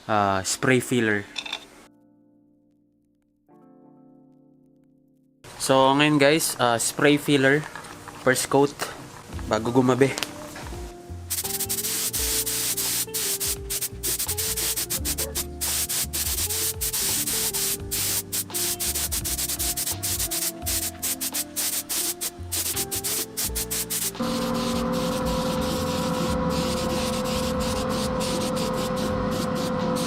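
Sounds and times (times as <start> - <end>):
background music: 1.9 - 30.0
spray can hissing: 11.3 - 30.0.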